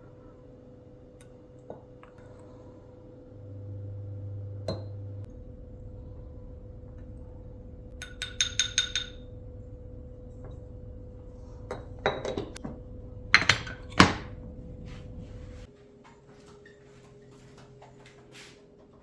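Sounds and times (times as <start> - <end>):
steady low hum: 0.0 - 15.7
dishes clinking and clattering: 8.0 - 9.3, 11.6 - 12.8, 13.4 - 14.4.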